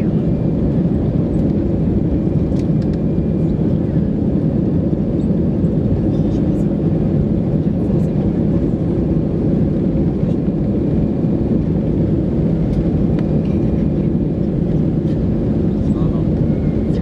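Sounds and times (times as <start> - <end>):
jet engines rumbling in cabin: 0.0 - 17.0.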